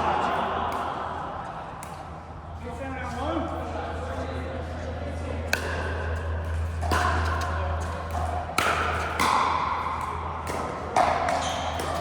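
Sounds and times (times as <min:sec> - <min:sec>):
steady low hum: 0:00.0 - 0:12.0
paddles hitting ball: 0:06.8 - 0:12.0.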